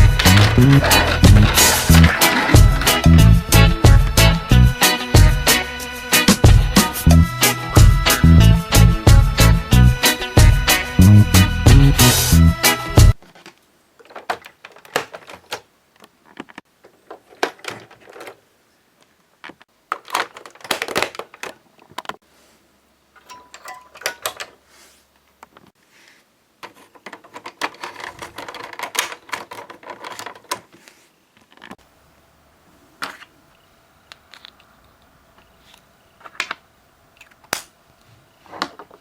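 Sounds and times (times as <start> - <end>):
plastic toy parts clicking: 0.0 - 3.0, 13.2 - 18.4, 19.9 - 22.2, 23.2 - 24.6, 26.6 - 30.7.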